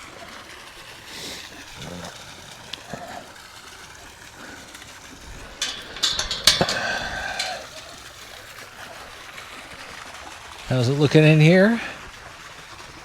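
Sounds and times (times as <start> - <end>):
door opening with clanks: 5.6 - 8.2.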